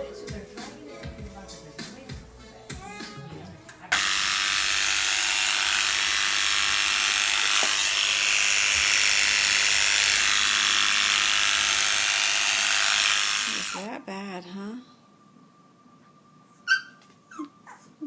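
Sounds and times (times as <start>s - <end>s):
electric clippers running: 3.9s - 13.9s.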